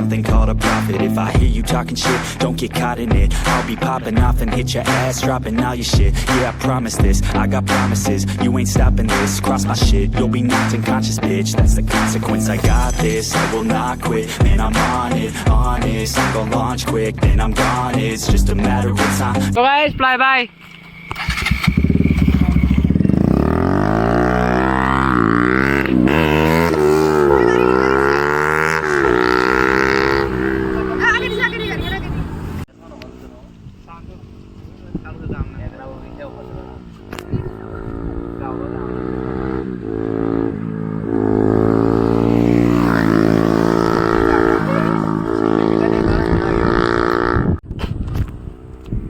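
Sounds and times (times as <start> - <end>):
motorcycle accelerating past: 20.5 - 33.4, 35.7 - 47.6.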